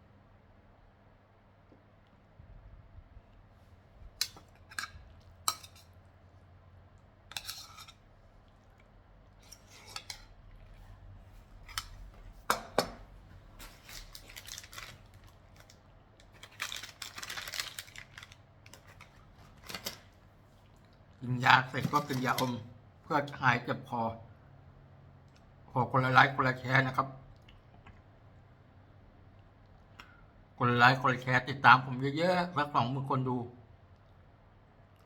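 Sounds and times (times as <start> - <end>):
rustling: 13.3 - 20.6.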